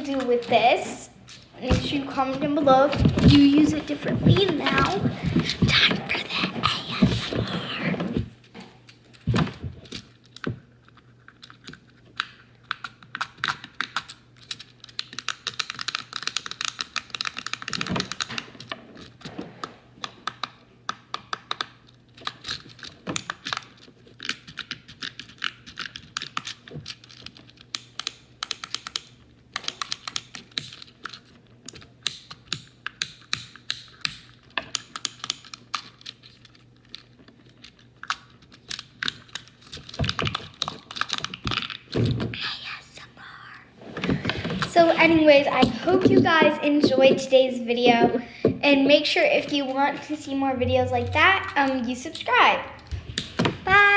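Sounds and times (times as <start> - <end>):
fidget cube clicking: 11.0 - 19.2, 20.2 - 41.9.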